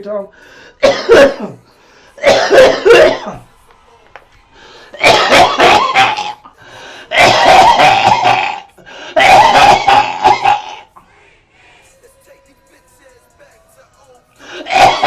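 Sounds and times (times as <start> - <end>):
man coughing: 0.8 - 1.6, 2.2 - 3.4, 5.0 - 6.5, 7.1 - 10.9, 14.4 - 15.0.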